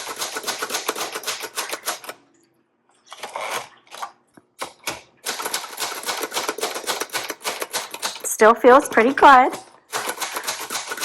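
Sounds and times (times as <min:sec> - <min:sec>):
typewriter keystrokes: 0:00.0 - 0:02.2, 0:04.6 - 0:08.3, 0:09.5 - 0:11.0.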